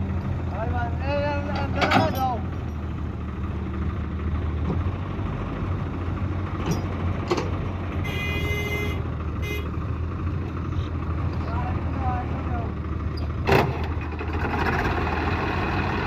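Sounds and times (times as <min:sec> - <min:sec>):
diesel engine running: 0:00.0 - 0:16.0
vehicle horn: 0:08.0 - 0:09.7.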